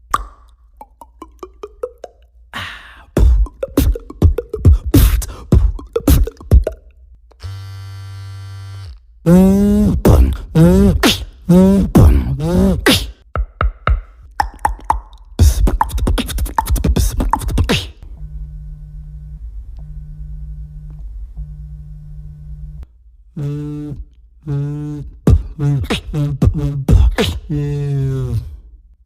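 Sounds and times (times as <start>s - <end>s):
beatboxing low hum: 0.0s - 7.0s, 9.3s - 18.6s, 19.7s - 28.7s
beatboxing clicks: 0.1s - 2.3s, 3.2s - 6.9s, 9.3s - 18.0s, 23.4s - 28.5s
falling pitched vocal sounds: 9.3s - 13.1s, 23.5s - 28.6s.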